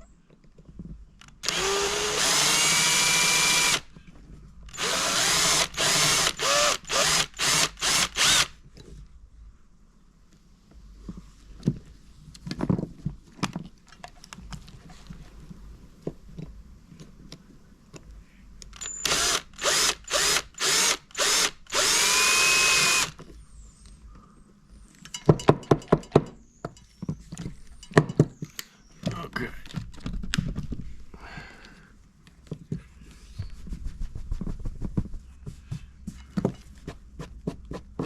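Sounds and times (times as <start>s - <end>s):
power drill drilling rivets: 1.2s - 3.9s, 4.7s - 8.5s, 18.7s - 23.2s.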